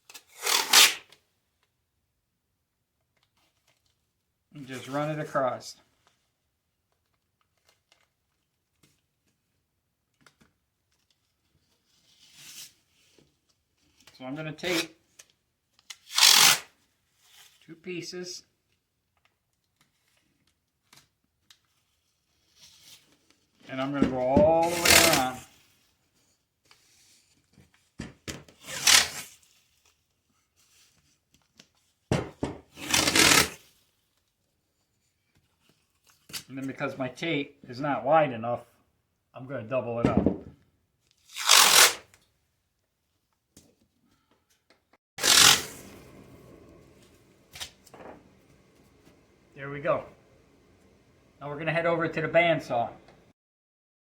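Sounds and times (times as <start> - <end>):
tape pulled off roll: 0.1 - 1.2, 15.9 - 16.7, 24.6 - 25.4, 28.4 - 29.5, 32.4 - 33.7, 41.2 - 42.2, 45.2 - 51.3.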